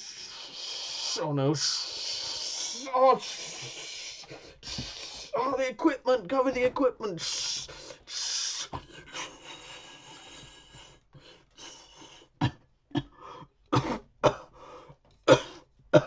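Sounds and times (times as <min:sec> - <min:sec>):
person coughing: 0:13.8 - 0:14.5, 0:15.3 - 0:16.0.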